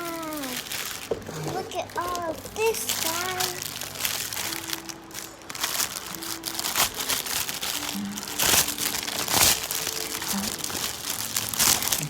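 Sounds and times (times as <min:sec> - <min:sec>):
packaging crinkling and rustling: 0:00.0 - 0:12.0.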